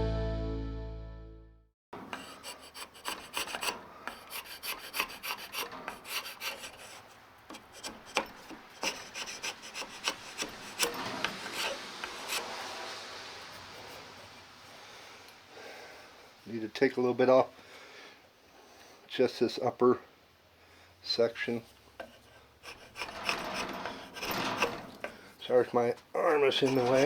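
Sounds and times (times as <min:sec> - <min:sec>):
tool scraping wood: 0:02.0 - 0:14.2, 0:21.5 - 0:27.0.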